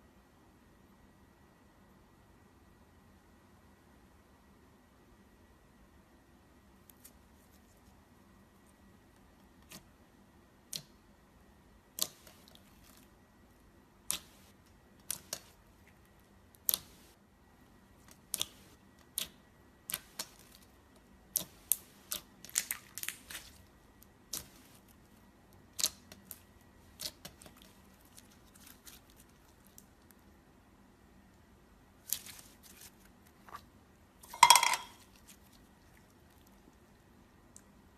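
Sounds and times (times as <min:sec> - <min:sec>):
slime clicking and popping: 0:16.6 - 0:17.1, 0:18.1 - 0:20.6, 0:25.7 - 0:27.6.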